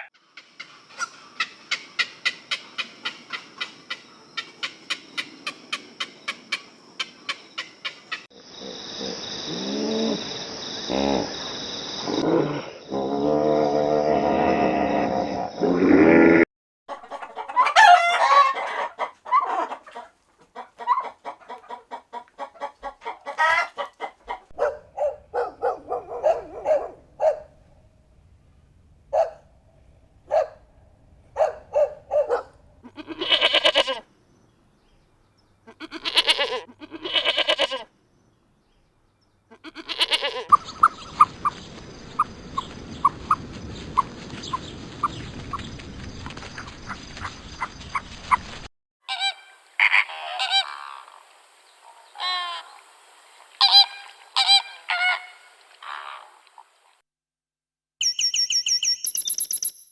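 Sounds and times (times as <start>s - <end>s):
chickens clucking and calling: 0.3s - 8.3s, 16.9s - 24.6s, 40.4s - 41.6s
short chirps: 58.0s - 59.9s.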